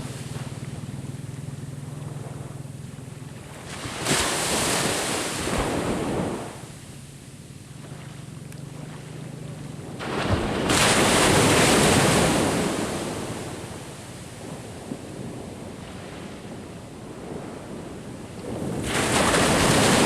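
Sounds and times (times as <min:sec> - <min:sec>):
wind on microphone: 0:00.0 - 0:20.0
wave breaking on shore: 0:03.4 - 0:06.8, 0:10.0 - 0:14.0, 0:18.2 - 0:20.0.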